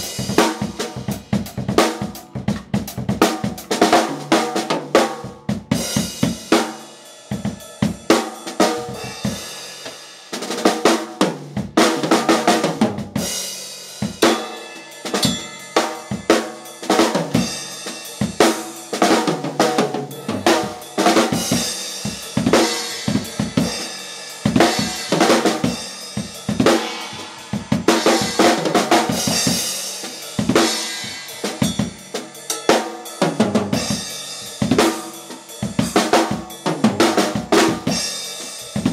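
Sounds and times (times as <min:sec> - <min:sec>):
drum kit playing fast: 0:00.0 - 0:38.9
cymbal wash: 0:25.8 - 0:28.4.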